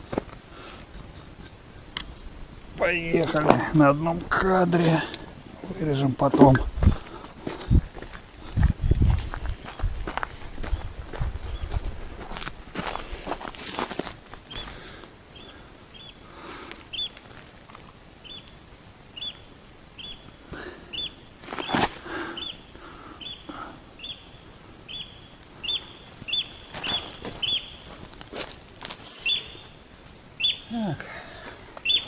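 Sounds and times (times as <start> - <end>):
bird chirping: 14.5 - 16.2, 16.9 - 17.2, 18.2 - 28.0, 29.1 - 29.8, 30.4 - 30.8.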